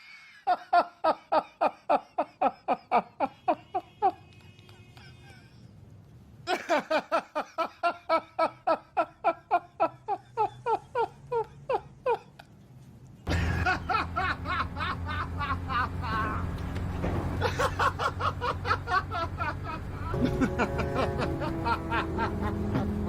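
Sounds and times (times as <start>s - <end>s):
person laughing: 0.1s - 5.7s, 6.5s - 12.5s, 13.3s - 16.5s, 17.4s - 23.0s.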